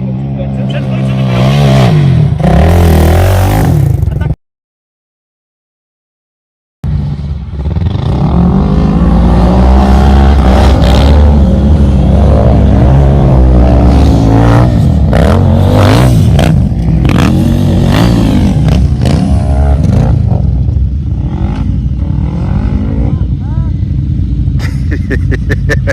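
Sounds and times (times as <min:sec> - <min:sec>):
atv engine running hard: 0:06.9 - 0:25.9.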